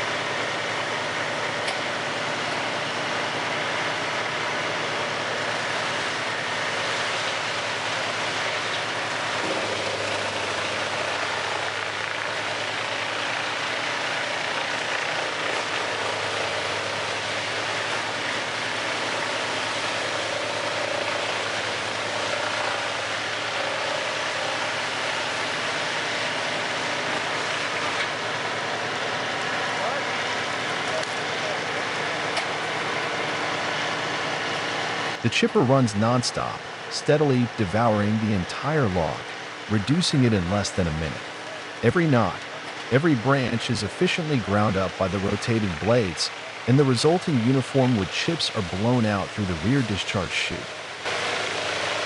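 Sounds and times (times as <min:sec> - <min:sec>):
wood chipper grinding log: 0:00.0 - 0:52.0
low hum: 0:08.5 - 0:13.1.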